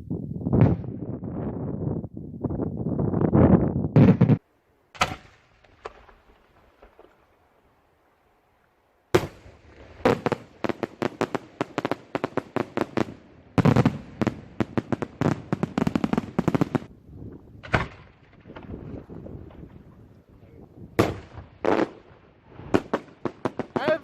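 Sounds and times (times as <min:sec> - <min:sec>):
fireworks bangs and cracks: 0:03.9 - 0:04.4, 0:09.1 - 0:16.9, 0:21.0 - 0:24.0.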